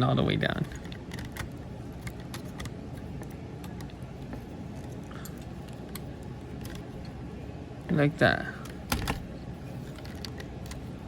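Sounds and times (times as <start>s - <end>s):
plastic parts clicking: 0.6s - 2.8s, 9.9s - 10.9s.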